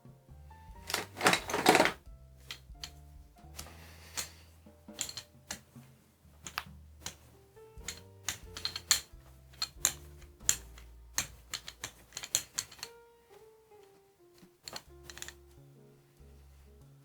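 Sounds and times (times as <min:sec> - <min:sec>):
music with low notes and bass: 0:00.0 - 0:12.0.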